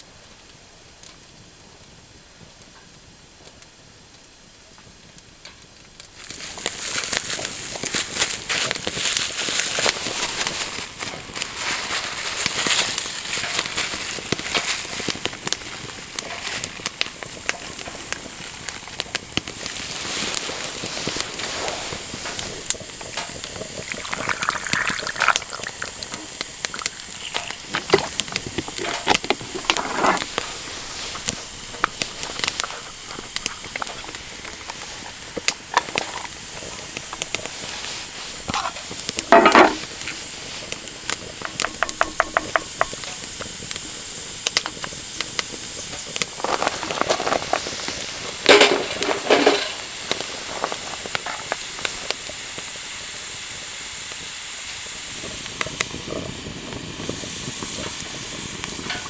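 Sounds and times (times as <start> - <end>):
chicken sizzling in a pan: 6.0 - 59.0
utensil scraping a pan: 19.7 - 24.4, 25.0 - 43.3, 45.8 - 51.6.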